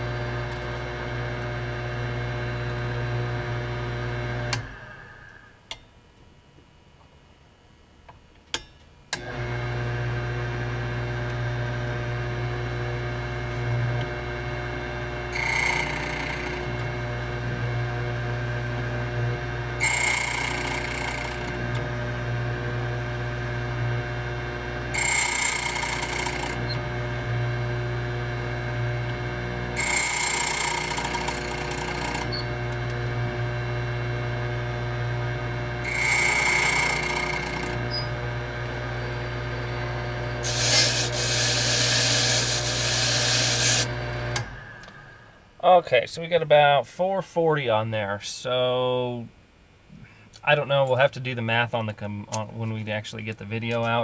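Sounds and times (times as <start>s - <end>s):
key-cutting machine motor hum: 15.4s - 17.0s, 19.8s - 21.8s, 24.9s - 27.2s, 29.8s - 32.9s, 35.8s - 43.8s.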